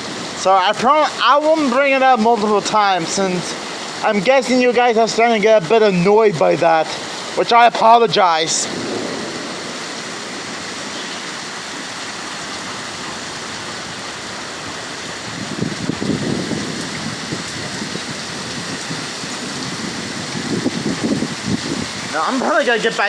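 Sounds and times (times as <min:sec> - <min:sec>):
rain falling steadily: 0:00.0 - 0:23.0.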